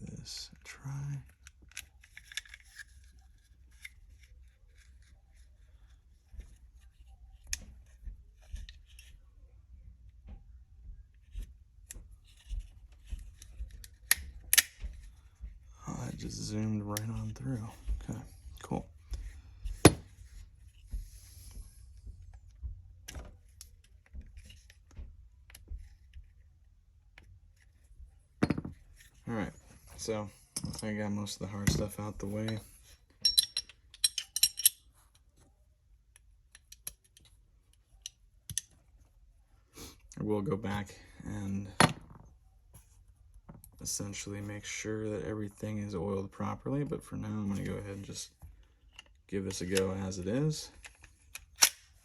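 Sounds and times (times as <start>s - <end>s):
pistol parts clicking and scraping: 0.5s - 9.2s, 11.2s - 15.5s, 16.2s - 21.6s, 23.0s - 29.2s, 30.0s - 39.1s, 46.9s - 52.0s
pistol parts clicking and tapping: 1.3s - 3.1s, 11.8s - 15.5s, 18.6s - 20.1s, 33.2s - 35.3s, 36.1s - 38.8s, 50.7s - 52.0s.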